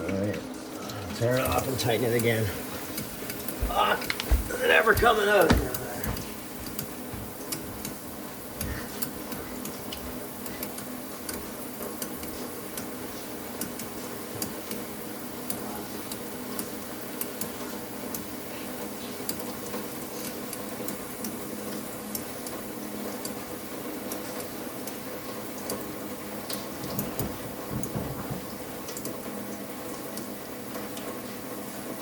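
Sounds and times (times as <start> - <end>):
steady low hum: 0.0 - 12.3.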